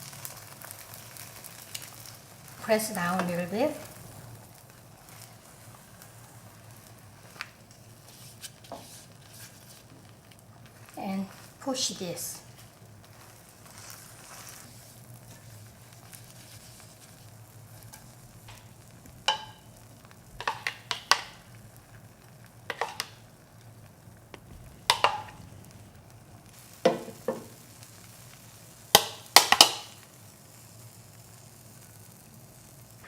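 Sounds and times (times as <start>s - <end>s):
egg sizzling: 0.0s - 33.0s
utensil scraping a frying pan: 0.6s - 19.7s, 20.4s - 21.4s, 22.6s - 23.3s, 23.9s - 28.2s.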